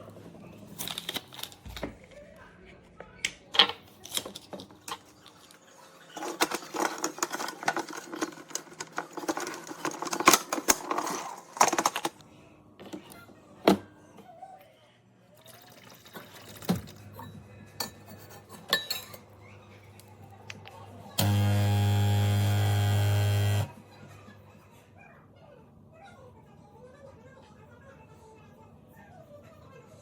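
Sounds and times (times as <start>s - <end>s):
kitchenware clinking and clattering: 3.2s - 12.2s, 15.4s - 19.8s.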